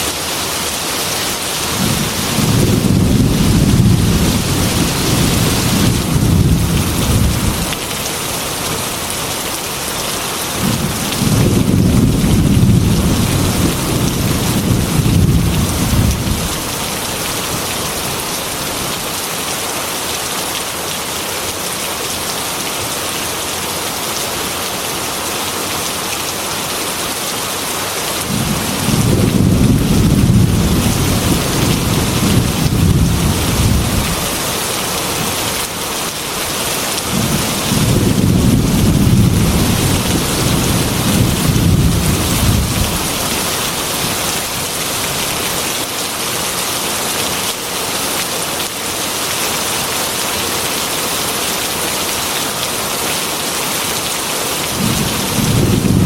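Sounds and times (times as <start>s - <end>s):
heavy rain on a metal roof: 0.0s - 56.0s
thunder rumbling: 1.7s - 7.7s, 10.6s - 17.7s, 28.3s - 35.4s, 37.1s - 44.2s, 54.8s - 56.0s.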